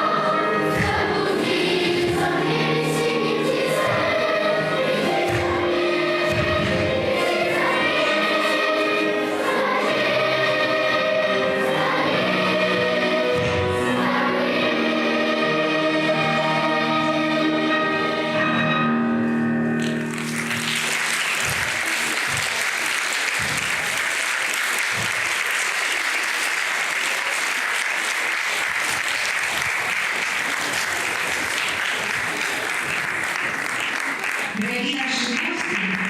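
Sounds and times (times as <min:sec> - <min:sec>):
singing with music: 0:00.0 - 0:19.1
audience applause: 0:19.8 - 0:36.0.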